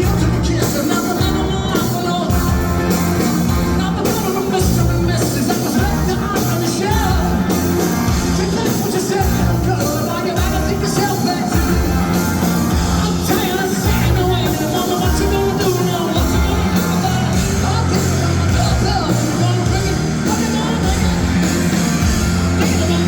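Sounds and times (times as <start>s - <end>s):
live rock band playing: 0.0s - 23.0s
man singing: 0.0s - 23.0s.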